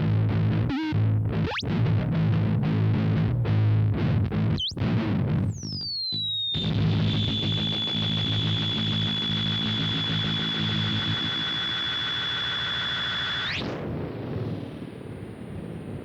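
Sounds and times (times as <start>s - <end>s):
high-pitched whistle: 5.6s - 13.5s
low hum: 5.9s - 13.7s.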